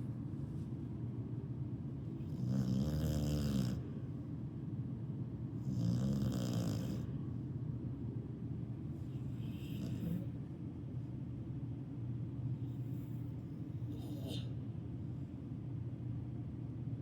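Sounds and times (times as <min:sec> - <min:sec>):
buzzing snores: 0:02.2 - 0:03.8, 0:05.6 - 0:07.1.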